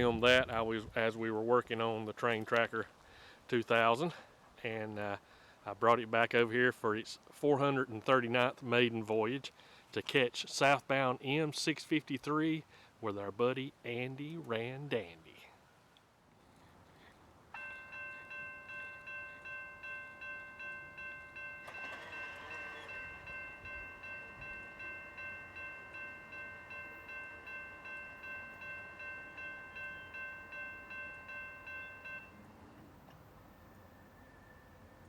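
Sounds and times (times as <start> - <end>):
railroad crossing bell ringing: 17.5 - 35.0.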